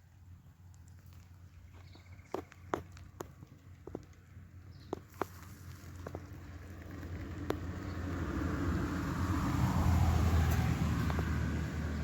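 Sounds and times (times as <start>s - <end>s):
road vehicle passing: 3.4s - 12.0s.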